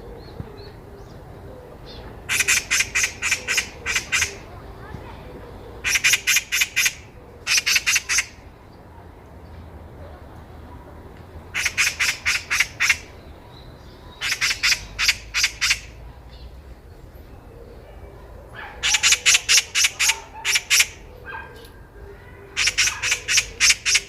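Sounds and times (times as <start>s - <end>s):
magpie chattering: 2.3s - 4.5s, 5.8s - 8.4s, 11.5s - 13.3s, 14.1s - 16.0s, 18.8s - 21.1s, 22.6s - 24.0s.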